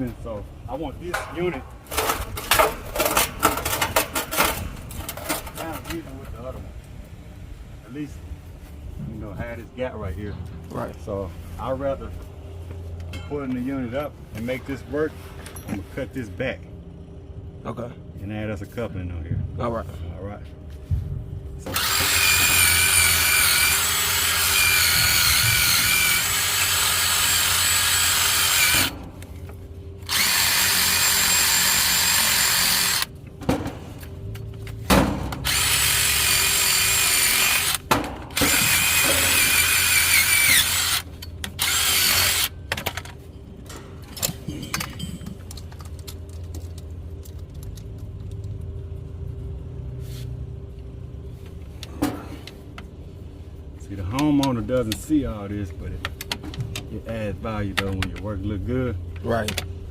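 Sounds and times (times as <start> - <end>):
handheld power tool running: 21.7 - 29.1, 30.0 - 33.1, 35.4 - 42.6.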